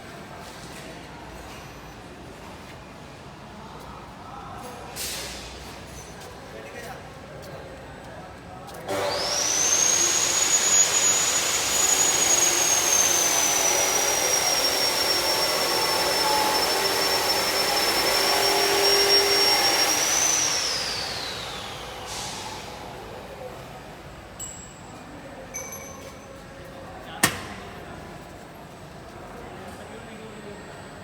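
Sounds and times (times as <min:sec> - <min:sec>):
electric motor whine winding down: 0:08.9 - 0:23.3.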